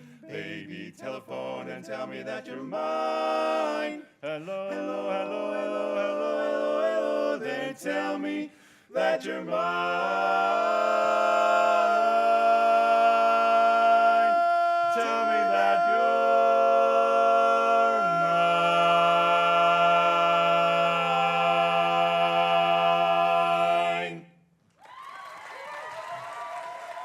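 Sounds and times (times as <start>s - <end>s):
vocal quartet singing a cappella: 0.0s - 24.4s
applause: 24.7s - 27.0s.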